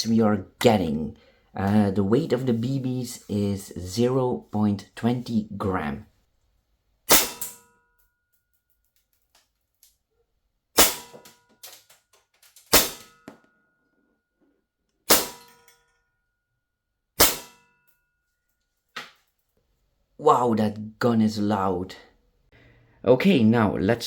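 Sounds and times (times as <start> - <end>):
airsoft pistol shots: 7.1 - 7.6, 10.8 - 11.2, 12.7 - 13.2, 15.1 - 15.6, 17.2 - 17.7
metallic ring: 7.1 - 8.8, 17.2 - 18.5.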